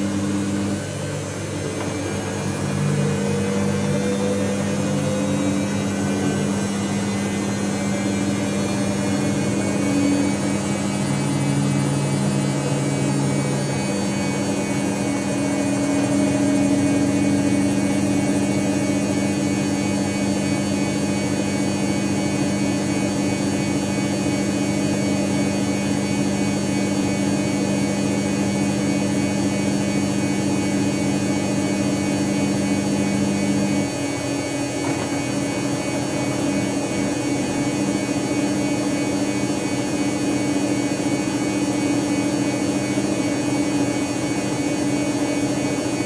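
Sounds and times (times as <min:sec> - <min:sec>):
washing machine motor humming: 0:00.0 - 0:46.0.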